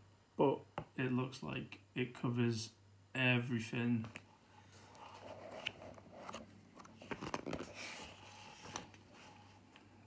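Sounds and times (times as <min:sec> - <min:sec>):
paper pages rustling: 0:04.7 - 0:09.6.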